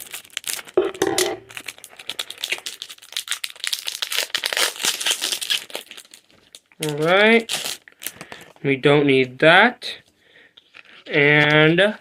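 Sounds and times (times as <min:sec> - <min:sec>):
foil wrapper crinkling and tearing: 0:00.0 - 0:08.6.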